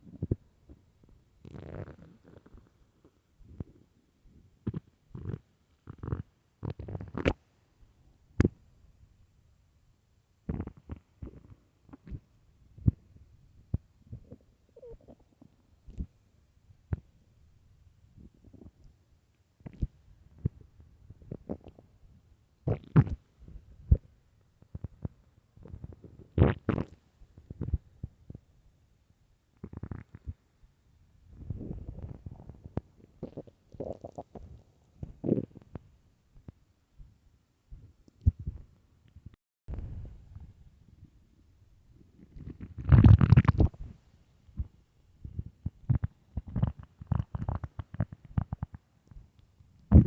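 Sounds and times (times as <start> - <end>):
stomach growling: 1.4 - 3.9, 4.6 - 7.4, 10.5 - 16.1, 19.6 - 21.8, 22.7 - 28.5, 29.6 - 30.4, 31.3 - 35.8, 42.0 - 44.0, 44.6 - 49.3.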